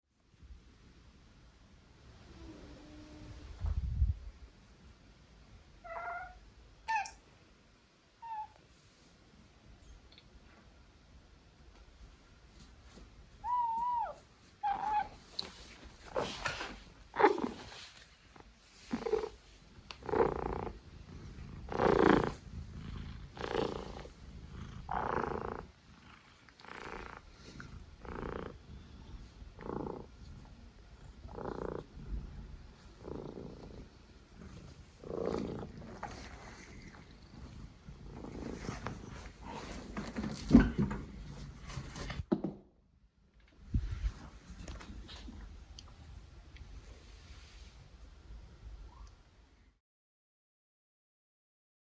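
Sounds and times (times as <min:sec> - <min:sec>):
cat snoring: 0:18.9 - 0:19.4, 0:20.0 - 0:30.2, 0:31.1 - 0:32.0, 0:32.9 - 0:39.6.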